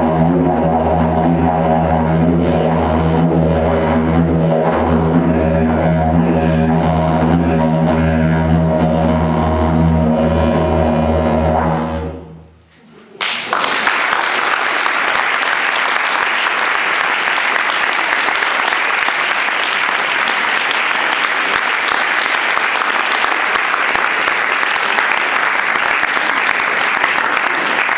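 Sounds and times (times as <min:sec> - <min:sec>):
didgeridoo drone: 0:00.0 - 0:12.6
audience applauding: 0:13.2 - 0:27.9.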